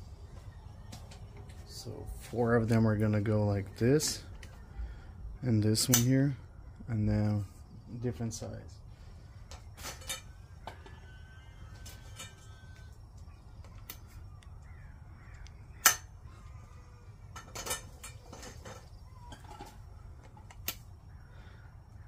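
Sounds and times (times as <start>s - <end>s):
crow-like calls: 10.4s - 17.4s, 21.0s - 22.0s.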